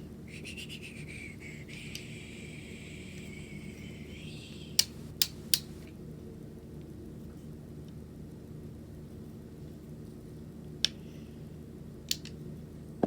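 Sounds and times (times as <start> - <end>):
steady low hum: 0.0 - 7.3
tripod sharp clicks: 4.8 - 5.8.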